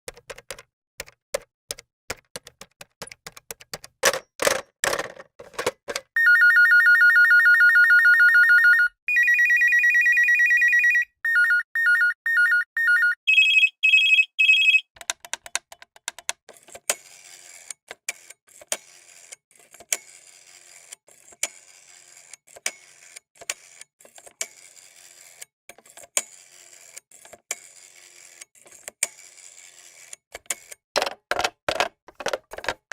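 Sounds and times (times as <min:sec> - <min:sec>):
telephone ringing: 0:06.2 - 0:14.9.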